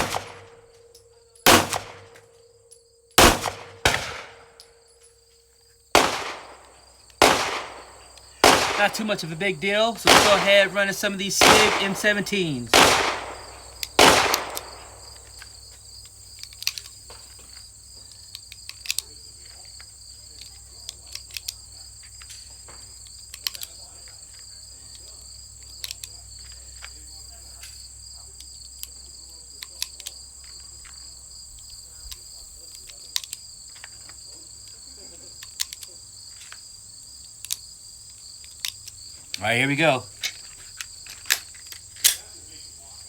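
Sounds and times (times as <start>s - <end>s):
insects chorus: 0.0s - 43.0s
ammunition handling clicks: 6.0s - 17.6s, 18.2s - 27.0s, 28.4s - 34.8s, 35.4s - 36.6s, 37.2s - 42.3s.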